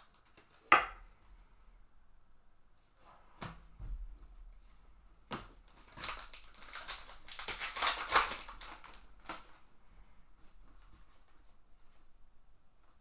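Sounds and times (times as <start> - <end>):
foil wrapper crinkling and tearing: 5.7 - 9.7.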